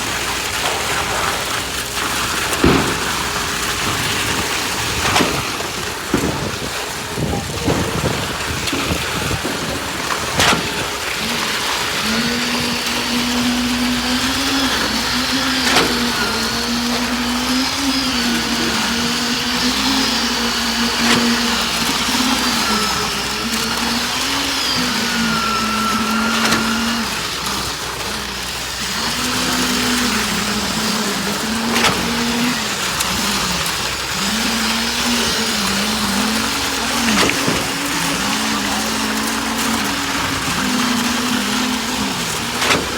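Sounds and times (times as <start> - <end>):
machinery motor running: 0.0 - 42.9
sharp knocks: 2.5 - 11.0.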